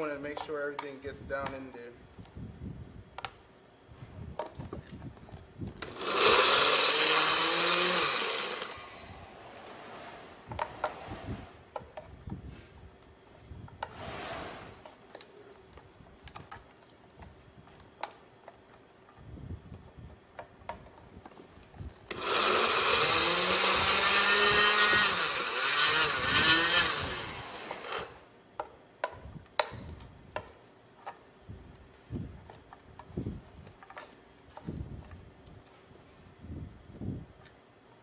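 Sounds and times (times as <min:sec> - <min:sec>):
blender chopping nuts: 0:05.8 - 0:09.1, 0:22.1 - 0:28.2.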